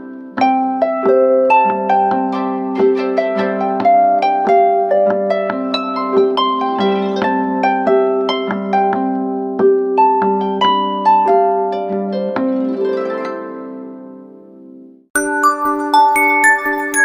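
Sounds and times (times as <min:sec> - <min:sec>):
plucked harp-like alarm melody: 0:00.0 - 0:14.3, 0:15.2 - 0:17.0
bell-like mallet alarm tone: 0:15.2 - 0:17.0.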